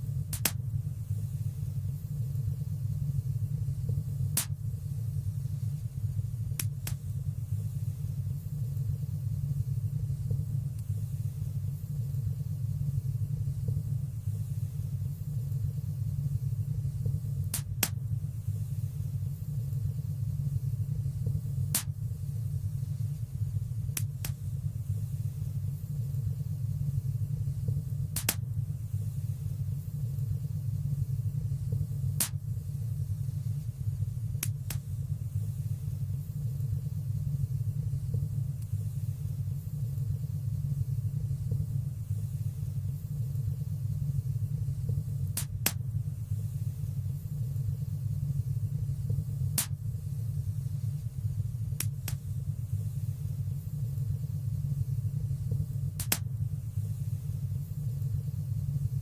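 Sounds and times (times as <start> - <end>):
burning wood crackling pops: 0.3 - 0.7, 4.3 - 4.6, 17.4 - 18.1, 21.3 - 22.1, 27.8 - 28.5, 45.2 - 46.0, 49.5 - 49.9, 51.7 - 52.4, 56.0 - 56.4.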